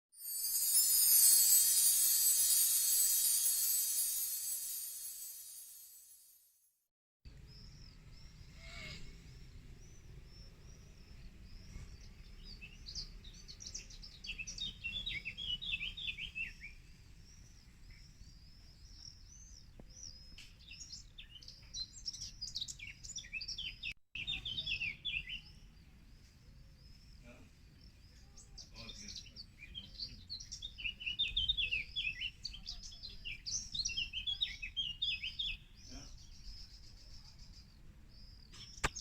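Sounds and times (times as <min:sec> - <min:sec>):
birds chirping: 0:07.3 - 0:39.0.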